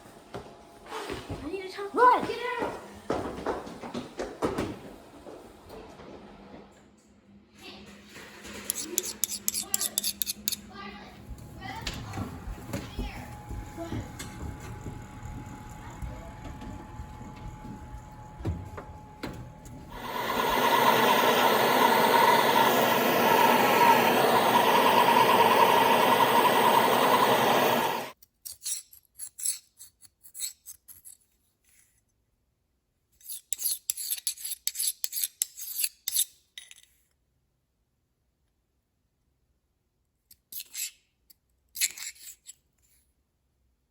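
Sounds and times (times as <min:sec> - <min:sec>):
knife rasping on steel: 0:08.6 - 0:10.6.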